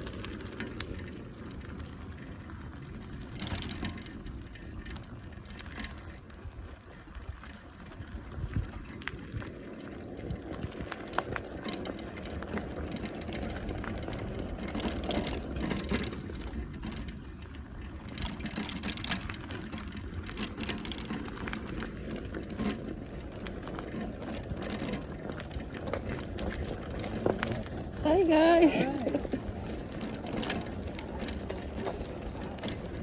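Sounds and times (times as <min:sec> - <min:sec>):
bicycle tyre noise on rough path: 0:00.0 - 0:33.0
bike rattles and clicks: 0:00.0 - 0:33.0.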